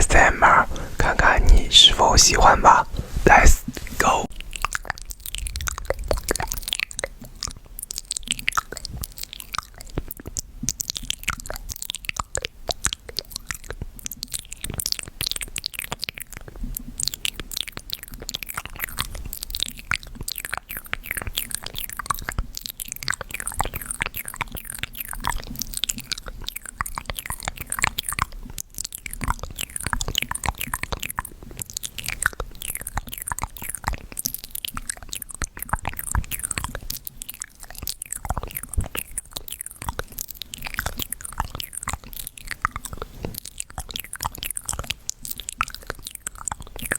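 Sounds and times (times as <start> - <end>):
kaleidoscope crackling and tapping: 20.0 - 46.9.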